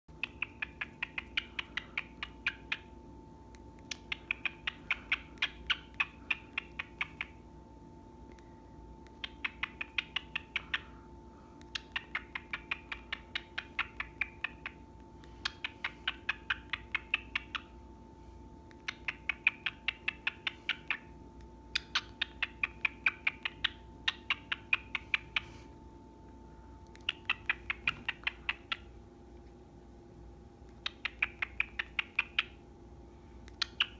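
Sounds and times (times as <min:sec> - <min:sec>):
steady low hum: 0:00.1 - 0:33.9
bird chattering clicks: 0:00.2 - 0:02.9, 0:03.8 - 0:07.4, 0:09.1 - 0:10.9, 0:11.6 - 0:17.7, 0:18.7 - 0:21.1, 0:21.7 - 0:25.5, 0:26.9 - 0:28.9, 0:30.7 - 0:32.6, 0:33.5 - 0:33.9.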